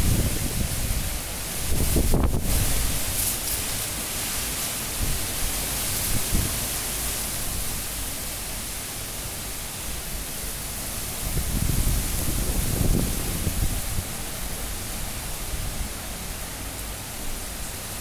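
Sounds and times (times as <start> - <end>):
strong wind rushing: 0.0 - 2.9, 11.2 - 14.3
wind gusts buffeting microphone: 0.0 - 3.2, 10.9 - 16.2.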